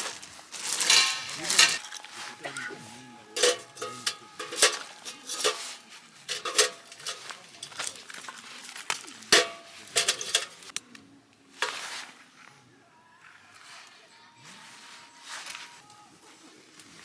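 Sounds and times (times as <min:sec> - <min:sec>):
metal cookware clinking: 0:00.0 - 0:10.8.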